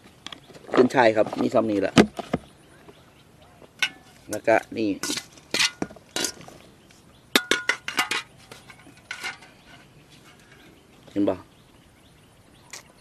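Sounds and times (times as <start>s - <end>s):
dishes and utensils clinking: 3.8s - 4.2s, 5.0s - 6.5s, 7.4s - 10.5s.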